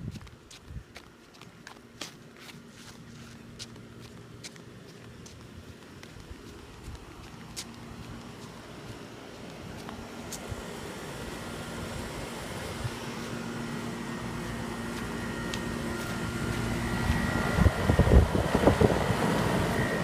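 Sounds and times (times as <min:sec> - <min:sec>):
air conditioner unit humming: 0:00.0 - 0:20.0
fan whir: 0:00.0 - 0:20.0
faint high whine: 0:07.8 - 0:20.0
gusty low rumbling: 0:16.8 - 0:19.8.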